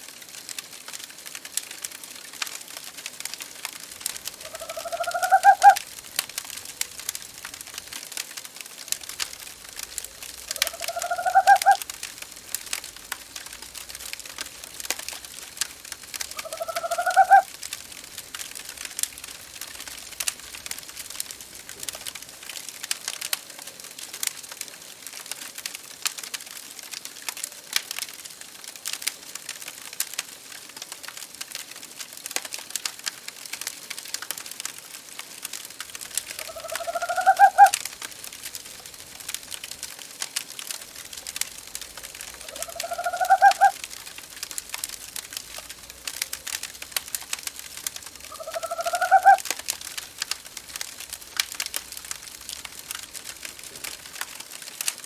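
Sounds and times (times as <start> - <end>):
fireplace crackling and popping: 0.0 - 55.0
owl hooting: 4.2 - 5.8, 10.0 - 11.8, 16.3 - 17.5, 36.3 - 37.8, 42.4 - 43.8, 48.2 - 49.5.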